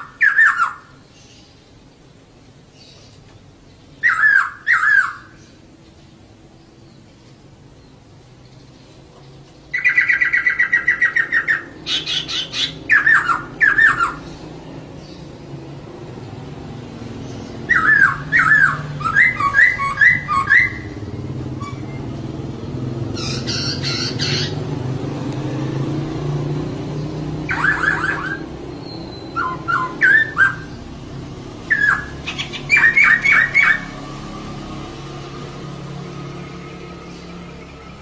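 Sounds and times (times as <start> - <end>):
laughingthrush chirping: 9.8 - 14.2, 23.1 - 24.7, 27.4 - 30.8, 31.7 - 33.9.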